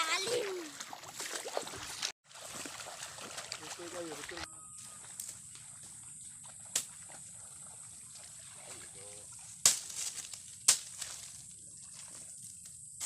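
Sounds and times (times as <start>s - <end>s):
water splashing from wading: 0.2s - 4.5s, 6.2s - 10.1s.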